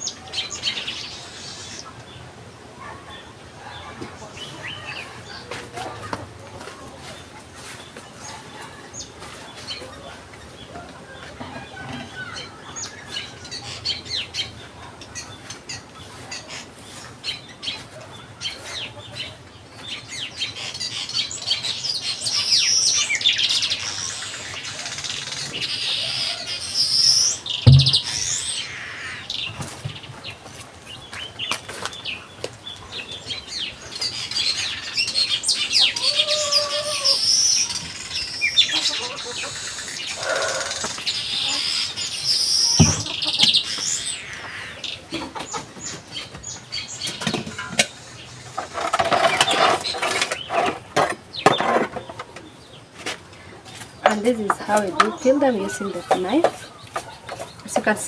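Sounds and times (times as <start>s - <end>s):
small birds chirping: 0.0s - 58.0s
thump: 27.7s - 28.2s.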